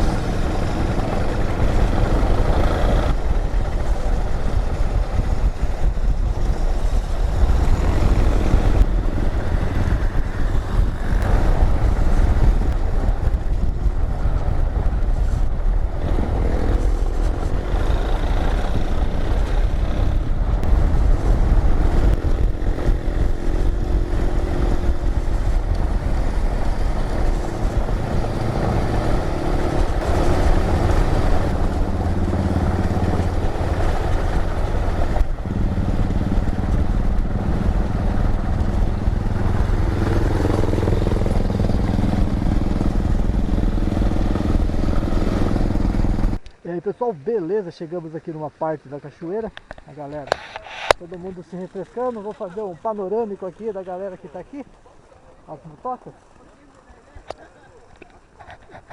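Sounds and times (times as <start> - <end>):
motorcycle engine running: 0.0 - 46.5
road and wind noise: 0.0 - 58.9.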